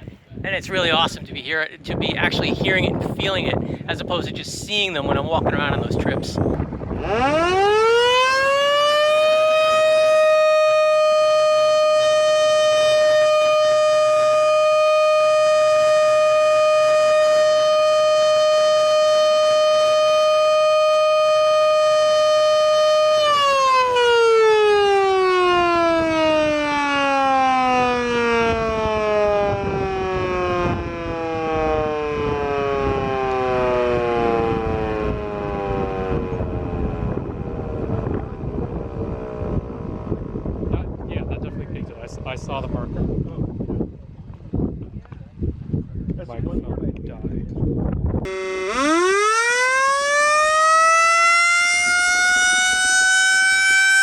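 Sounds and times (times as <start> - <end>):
mechanical air raid siren wailing: 7.0 - 40.0, 48.3 - 54.0.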